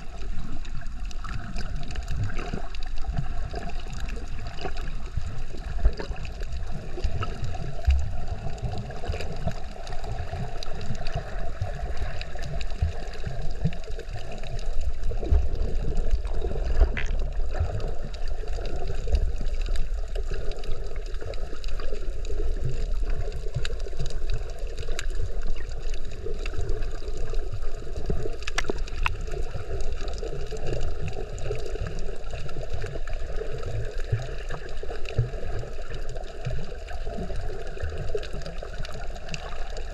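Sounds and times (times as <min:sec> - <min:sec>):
water sloshing and gurgling: 0:00.0 - 0:39.9
faint clicks: 0:28.2 - 0:29.2.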